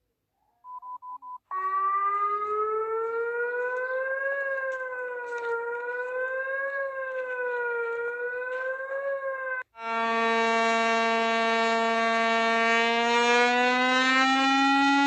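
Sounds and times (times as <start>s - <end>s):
brief beep: 0.7s - 1.5s
wailing alarm siren: 1.5s - 15.0s.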